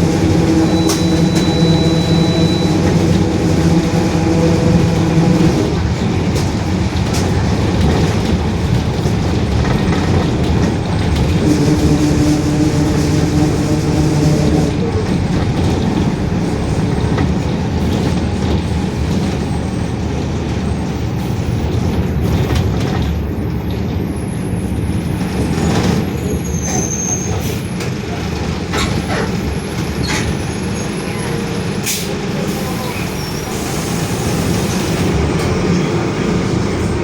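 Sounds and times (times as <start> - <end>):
bus drivetrain and road rumble: 0.0 - 37.0
air brake hisses and clicks: 31.8 - 35.2.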